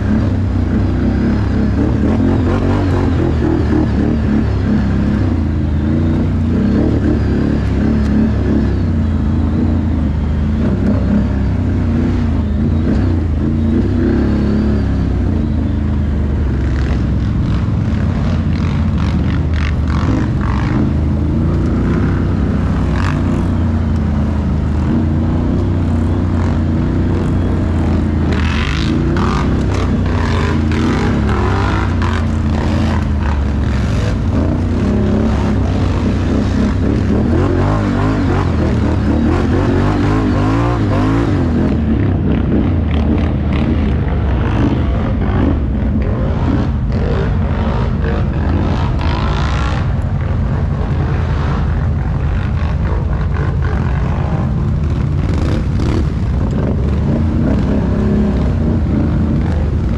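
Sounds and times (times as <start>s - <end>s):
atv engines humming: 0.0s - 59.9s
rough crackling noise: 16.5s - 59.9s.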